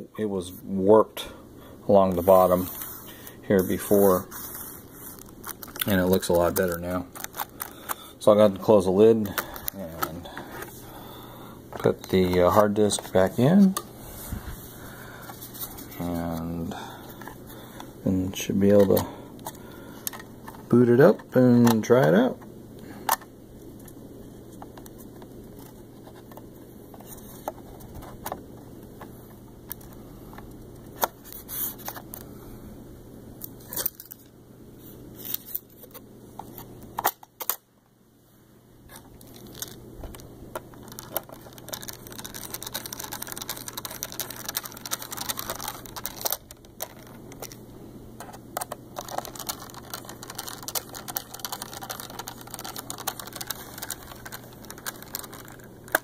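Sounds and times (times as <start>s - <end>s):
steady low hum: 0.0s - 56.0s
laptop plastic clicks and scrapes: 40.6s - 47.6s, 48.2s - 56.0s.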